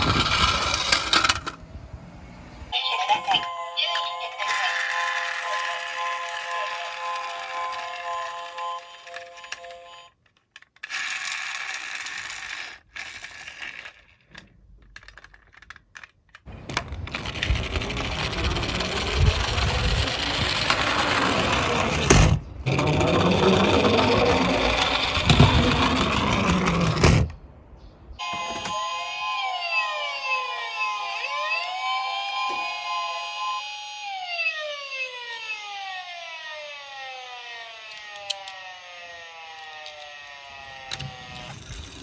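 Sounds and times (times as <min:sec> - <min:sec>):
police siren wailing: 0:02.7 - 0:10.1, 0:17.2 - 0:22.1, 0:28.2 - 0:41.8.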